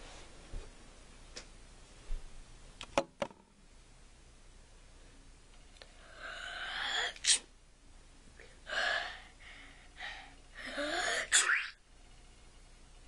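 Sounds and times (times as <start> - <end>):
person making sneeze-like noises: 7.1 - 7.5.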